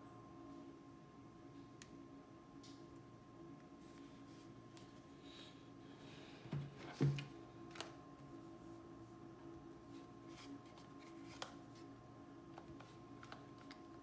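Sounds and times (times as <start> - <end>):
low electrical hum: 0.0 - 14.0.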